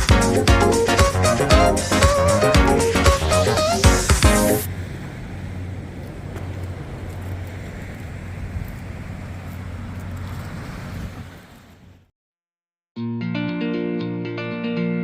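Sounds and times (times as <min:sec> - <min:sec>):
vehicle engine hum: 0:00.0 - 0:12.1
tyre and road noise: 0:00.1 - 0:12.0.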